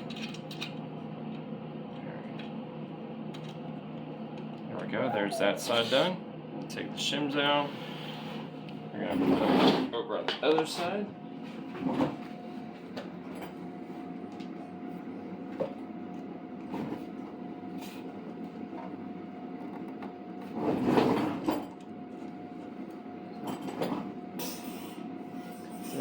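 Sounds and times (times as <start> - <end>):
small metal parts clicking: 0.0 - 0.8
steady background hum: 0.0 - 26.0.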